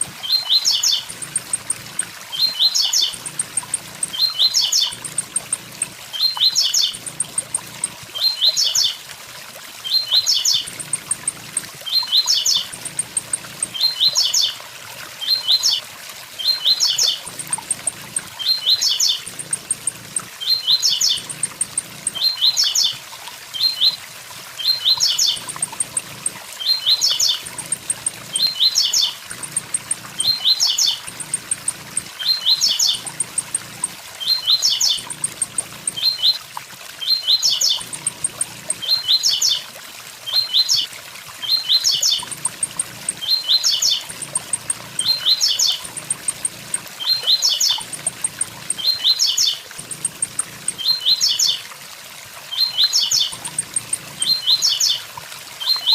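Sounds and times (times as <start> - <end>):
bird singing high quick phrases: 0.0 - 9.0, 9.8 - 14.6, 16.4 - 23.0, 24.6 - 36.4, 41.4 - 51.6, 52.5 - 55.0.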